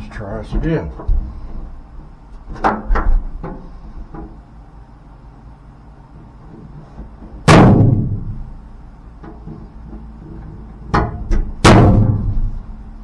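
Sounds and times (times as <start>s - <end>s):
loud ringing metal bang: 7.5s - 8.6s, 11.6s - 12.7s.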